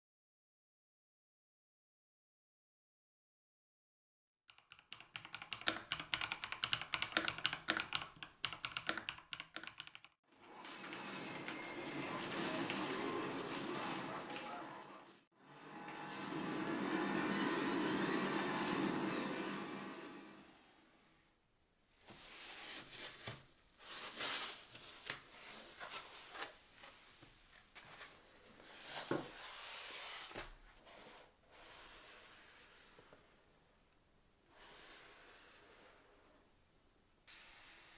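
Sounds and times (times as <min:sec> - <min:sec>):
mechanical keyboard typing: 0:04.5 - 0:10.2, 0:10.8 - 0:15.1
packaging rustling and scraping: 0:22.1 - 0:31.3.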